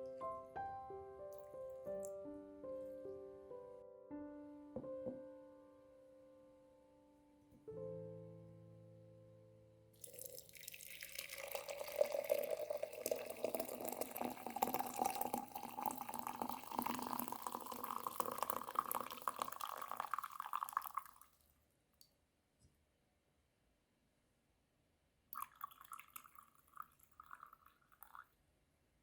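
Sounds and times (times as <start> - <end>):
liquid pouring into container: 10.0 - 21.4, 25.4 - 28.3.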